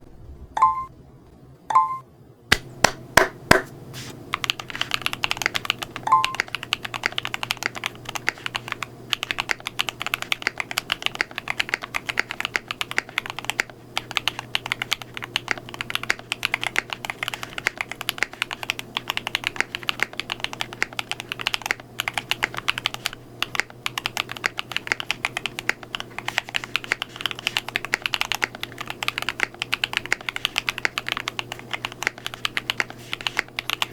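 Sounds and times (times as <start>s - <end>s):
short beeps: 0.6s - 1.0s, 1.7s - 2.0s
fast mechanical keyboard typing: 4.3s - 33.9s.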